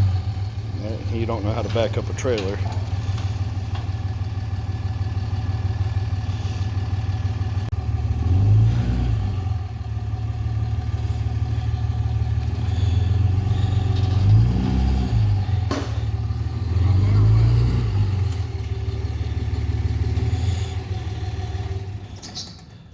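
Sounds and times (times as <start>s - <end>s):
vehicle engine running: 0.0s - 22.9s.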